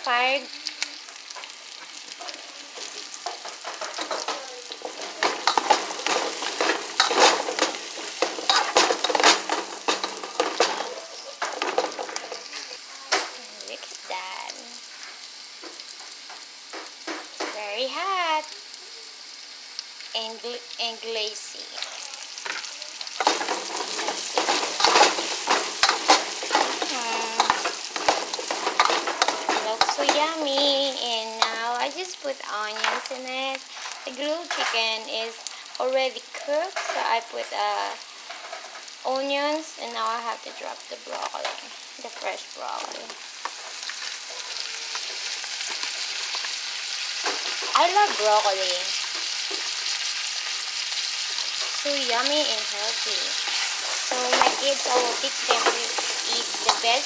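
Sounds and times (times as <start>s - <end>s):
chicken sizzling in a frying pan: 0.0s - 57.0s
utensil scraping a pan: 2.8s - 12.5s, 21.8s - 31.8s, 53.0s - 57.0s.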